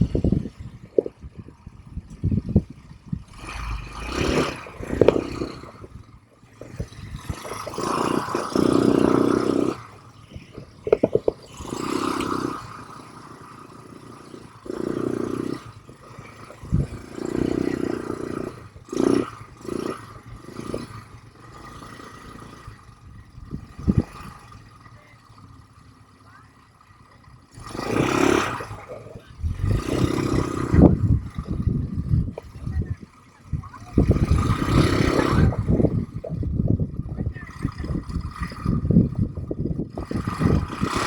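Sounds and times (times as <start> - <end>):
atv engine revving: 0.0 - 41.0
knocks and clatter over rough ground: 0.0 - 41.0.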